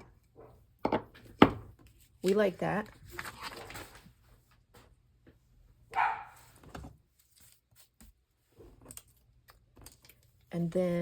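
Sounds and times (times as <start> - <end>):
dog barking: 5.9 - 6.4.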